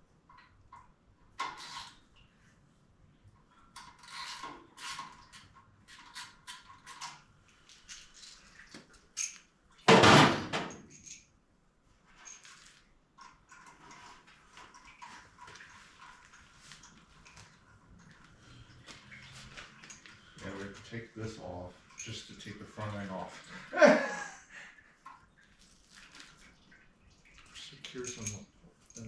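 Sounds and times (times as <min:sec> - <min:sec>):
metal tools clinking and rattling: 0:09.2 - 0:09.5, 0:10.2 - 0:11.3, 0:21.8 - 0:22.5, 0:27.9 - 0:29.0.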